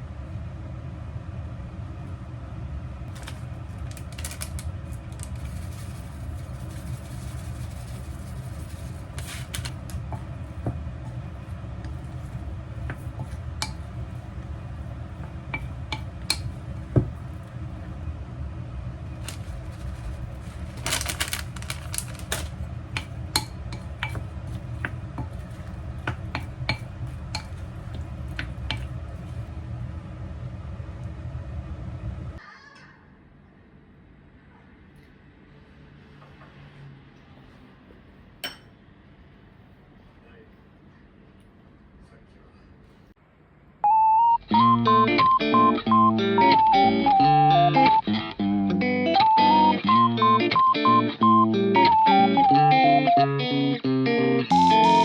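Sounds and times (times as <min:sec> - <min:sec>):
steady low hum: 0:00.0 - 0:32.4
dishes and cutlery clinking: 0:15.2 - 0:17.5, 0:20.4 - 0:29.0.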